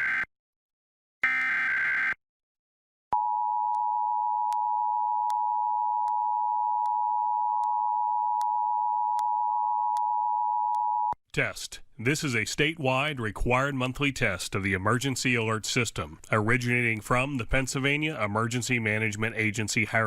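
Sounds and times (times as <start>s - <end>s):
harsh digital data warble: 1.2s - 2.2s.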